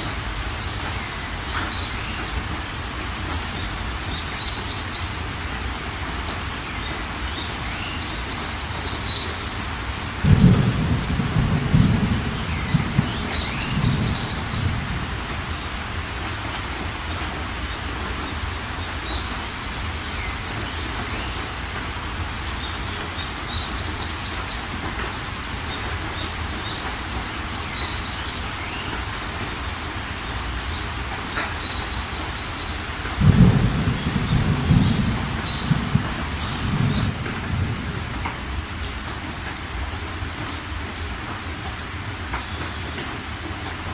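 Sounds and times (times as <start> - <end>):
steady rain: 0.0 - 43.9
thunder rumbling: 9.1 - 16.9, 31.7 - 39.6
birds chirping: 10.3 - 15.8, 27.5 - 37.2.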